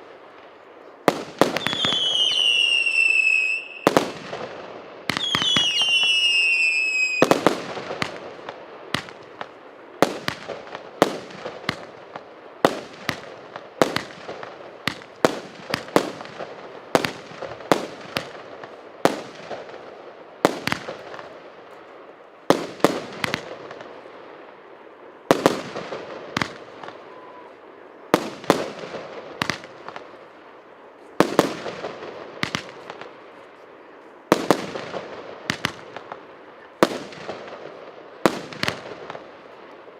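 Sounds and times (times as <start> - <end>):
firework falling whistle: 1.6 - 4.0, 5.1 - 7.3.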